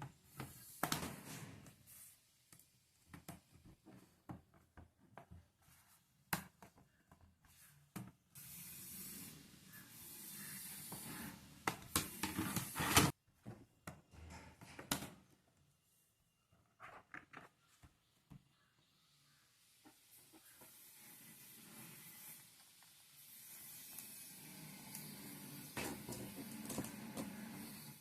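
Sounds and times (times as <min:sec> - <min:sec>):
hissing rubbing noise: 0:08.4 - 0:13.1.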